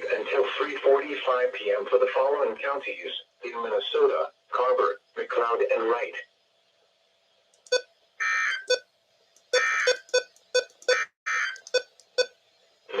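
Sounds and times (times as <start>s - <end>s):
sharp clicking blips: 9.4s - 12.3s.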